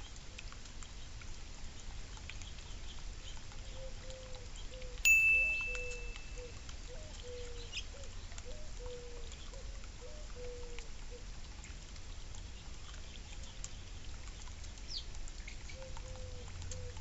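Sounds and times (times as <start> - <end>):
sharp metallic ding: 5.1 - 6.6.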